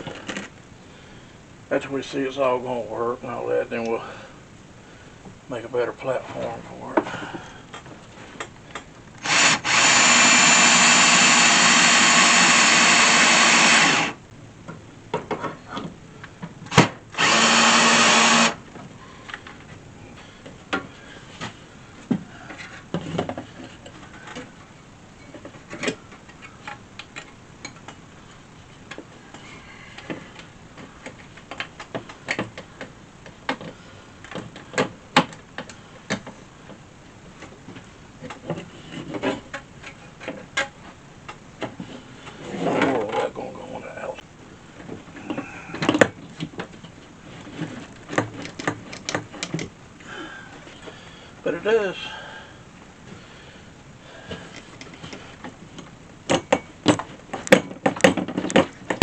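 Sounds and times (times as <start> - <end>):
power drill drilling into wood: 9.2 - 14.2, 16.7 - 18.6.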